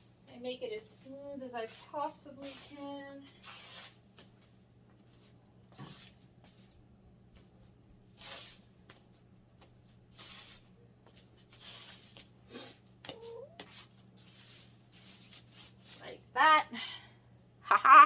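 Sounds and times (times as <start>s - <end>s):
plastic sheeting rustling: 14.2s - 16.2s.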